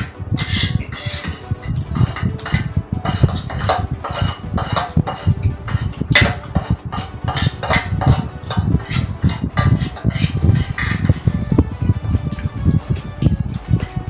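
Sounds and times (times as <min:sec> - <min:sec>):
cutlery clinking on plates: 0:02.0 - 0:11.2.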